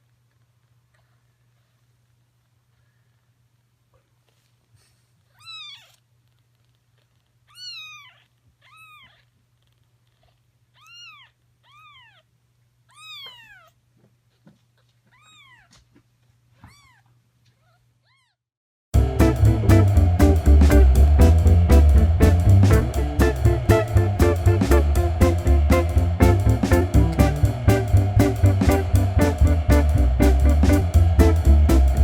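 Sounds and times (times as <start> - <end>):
kitten mewing: 5.3 - 6.0, 12.9 - 13.8
loud guitar music: 19.0 - 32.0.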